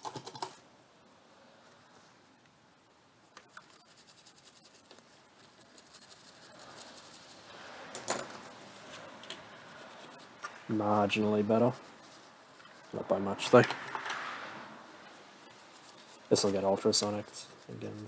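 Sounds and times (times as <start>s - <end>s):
scratchy bristle strokes: 1.0s - 18.0s.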